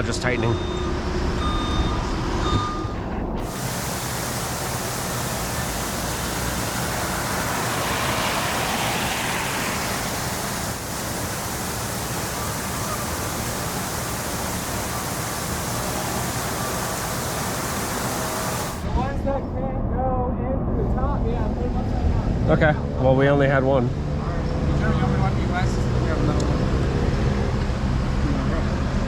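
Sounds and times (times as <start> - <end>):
heavy rain pouring: 3.4 - 18.9.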